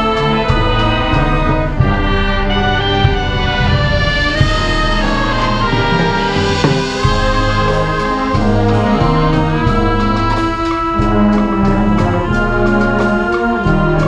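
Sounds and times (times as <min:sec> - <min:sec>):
brass band playing: 0:00.0 - 0:14.0
percussion strokes: 0:04.0 - 0:11.0.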